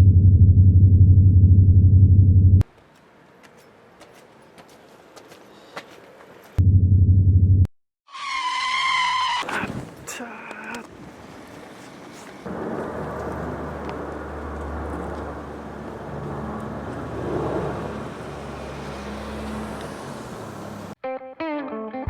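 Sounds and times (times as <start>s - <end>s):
road traffic rumble: 2.6s - 6.6s, 9.0s - 21.0s
plucked guitar music: 21.0s - 22.0s.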